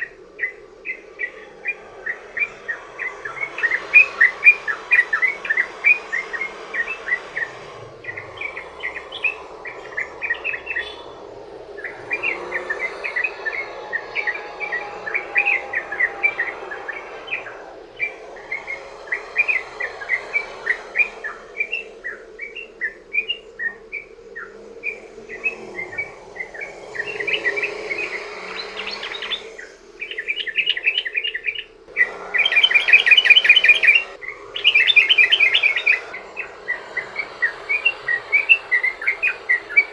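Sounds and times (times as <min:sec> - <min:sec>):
bird singing chattering chirps: 0:00.0 - 0:39.9
steady hiss: 0:00.0 - 0:39.9.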